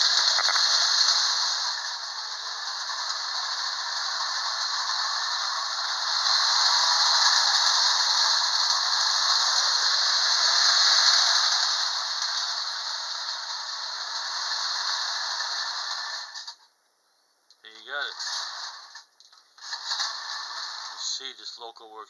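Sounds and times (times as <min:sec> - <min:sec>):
toy train rattling on track: 0:00.0 - 0:16.6, 0:17.7 - 0:22.0.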